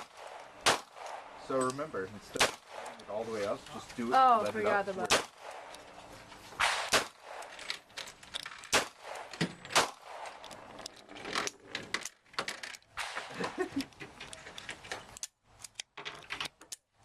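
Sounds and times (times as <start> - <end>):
gunshots: 0.0 - 1.4, 2.3 - 3.2, 5.0 - 5.8, 6.6 - 7.7, 8.7 - 10.5, 13.0 - 13.6
metallic gun handling clicks: 7.3 - 13.0, 13.8 - 16.9.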